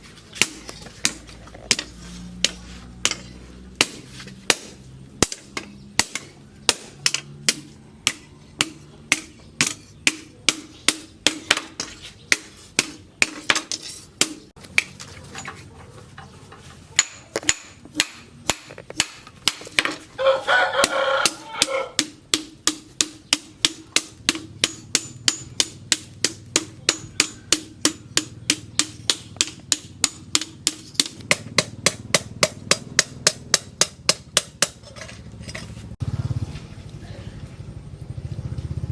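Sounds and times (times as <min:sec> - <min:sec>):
hammer striking steel on anvil: 0:00.4 - 0:15.0, 0:17.0 - 0:20.0, 0:20.8 - 0:35.7
rooster crowing: 0:20.2 - 0:22.0.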